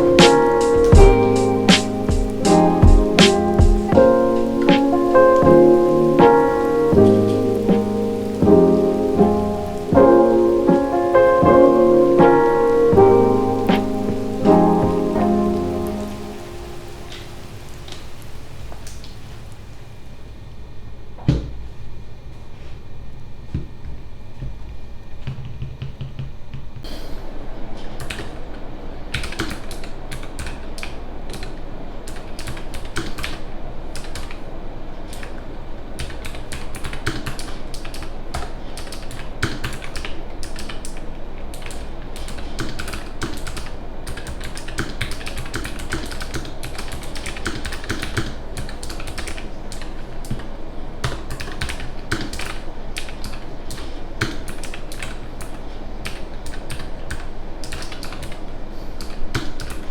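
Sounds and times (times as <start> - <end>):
mechanical keyboard typing: 29.1 - 31.5, 36.0 - 50.4.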